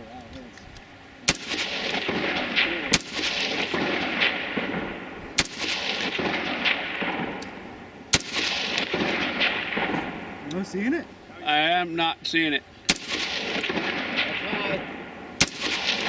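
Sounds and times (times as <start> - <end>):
rifle shots: 1.2 - 10.5, 12.9 - 16.0
rolling echo: 1.3 - 10.7, 12.9 - 16.0.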